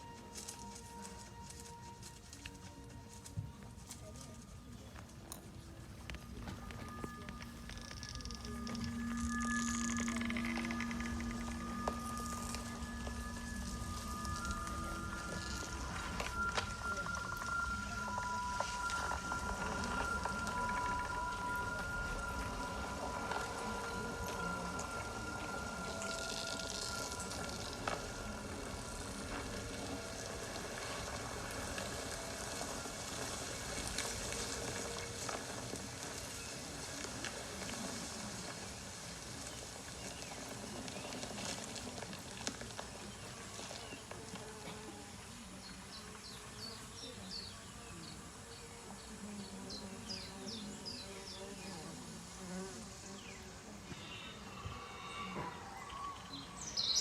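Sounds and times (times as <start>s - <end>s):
steady hissing: 6.1s - 41.7s
small birds chirping: 53.1s - 57.0s.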